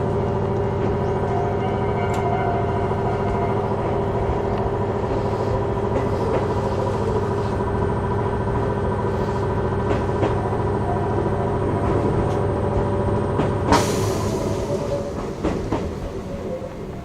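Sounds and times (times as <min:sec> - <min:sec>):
electric train rumbling: 0:00.0 - 0:17.0.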